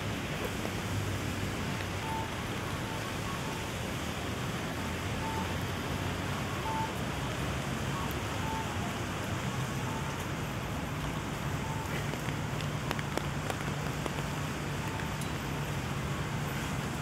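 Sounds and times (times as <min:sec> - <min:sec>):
rain falling: 0:00.0 - 0:17.0
faint short beeps: 0:02.0 - 0:03.7, 0:05.2 - 0:05.6.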